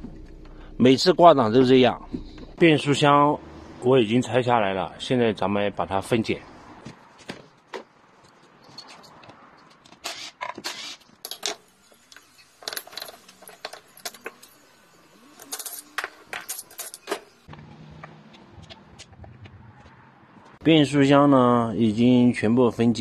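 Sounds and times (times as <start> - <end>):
metal tools and parts clinking: 8.2 - 17.5.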